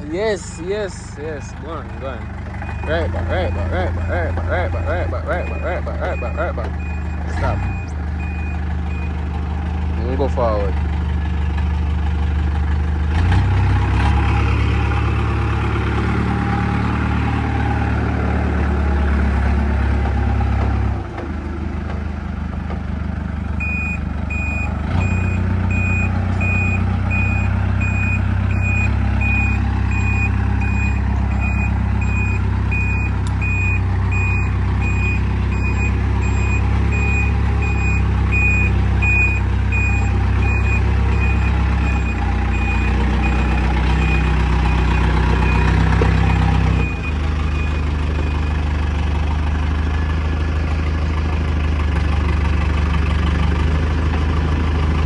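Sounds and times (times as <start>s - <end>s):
diesel engine running hard: 0.0s - 55.0s
reversing alarm beeping: 0.4s - 9.2s, 23.6s - 48.7s.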